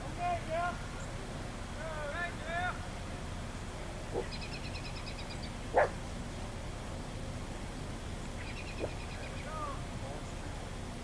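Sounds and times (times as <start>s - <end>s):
low background rumble: 0.0s - 11.0s
dog barking: 4.1s - 4.3s, 5.7s - 6.0s
dog yip: 5.7s - 6.0s.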